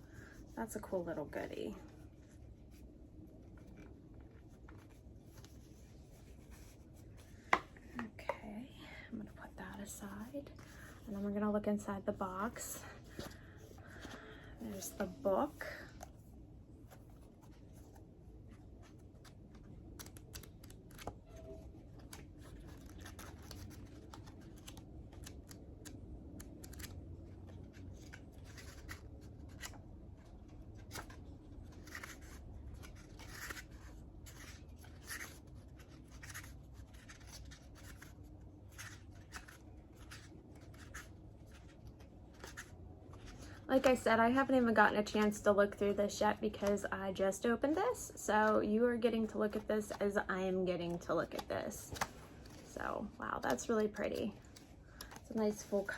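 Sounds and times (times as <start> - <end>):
low steady rumble: 0.0 - 20.2
paper and cardboard rustling: 16.8 - 44.4.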